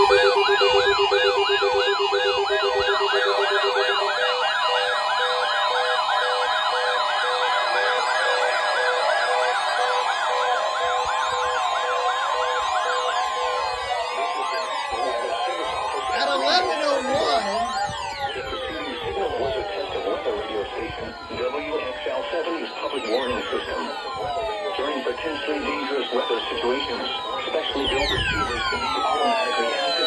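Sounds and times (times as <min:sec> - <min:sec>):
low pulsing beep: 0:00.0 - 0:04.6, 0:25.7 - 0:30.0
on-off beeping: 0:00.0 - 0:04.6
slow zigzag siren: 0:00.0 - 0:30.0
steady warning tone: 0:00.0 - 0:30.0
sweeping siren-like alarms: 0:00.0 - 0:30.0.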